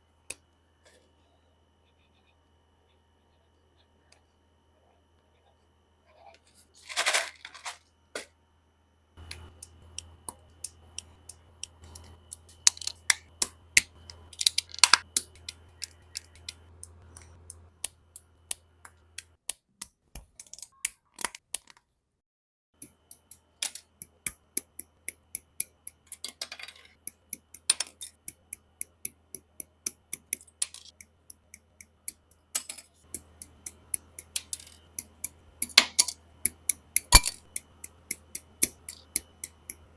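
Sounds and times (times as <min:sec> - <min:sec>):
plastic parts scraping: 0:06.4 - 0:08.3
plastic parts clicking and snapping: 0:09.2 - 0:19.3, 0:20.2 - 0:21.9, 0:29.9 - 0:39.8.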